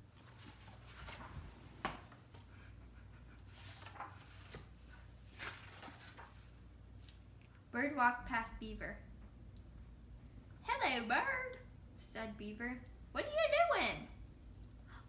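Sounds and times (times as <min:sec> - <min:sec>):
book pages turning: 0:03.6 - 0:07.2.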